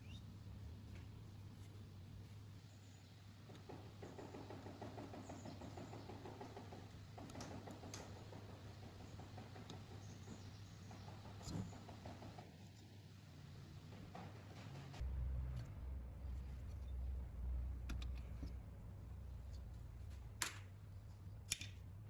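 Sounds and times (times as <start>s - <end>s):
steady low hum: 15.0s - 22.0s.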